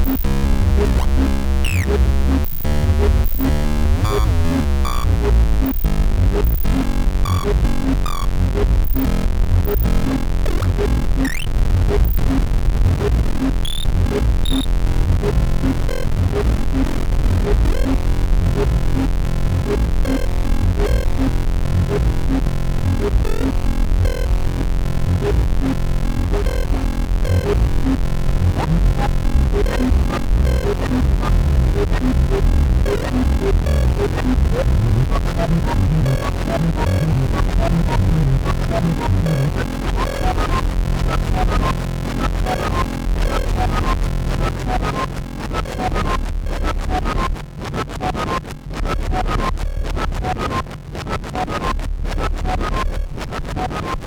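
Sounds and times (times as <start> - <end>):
glitchy clicks and blips: 0.0 - 14.7.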